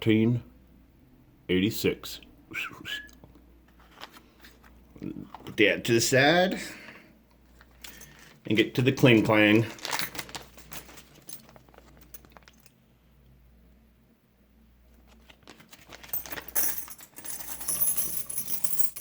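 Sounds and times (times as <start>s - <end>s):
coins clinking: 7.8s - 8.4s, 9.6s - 12.7s, 15.7s - 19.0s.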